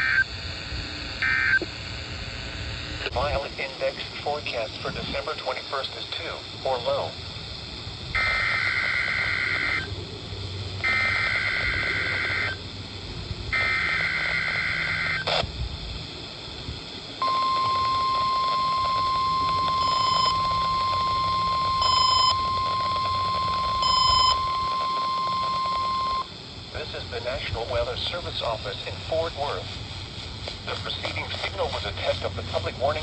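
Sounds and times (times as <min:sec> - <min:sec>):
digital data tone bursts: 0:00.0 - 0:00.3, 0:01.2 - 0:01.7, 0:08.2 - 0:09.9, 0:10.8 - 0:12.6, 0:13.5 - 0:15.5, 0:17.2 - 0:27.0
steady warning alarm tone: 0:00.0 - 0:00.5, 0:01.2 - 0:03.1, 0:08.1 - 0:10.0, 0:10.8 - 0:12.6, 0:13.5 - 0:15.4, 0:17.2 - 0:27.0
loud short beep: 0:17.2 - 0:26.3.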